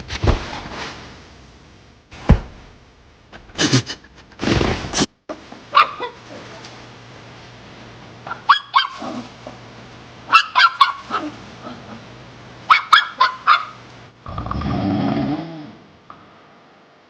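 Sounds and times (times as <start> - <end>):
dog yelping: 5.7 - 6.2, 8.3 - 9.3, 10.3 - 11.8, 12.7 - 13.8.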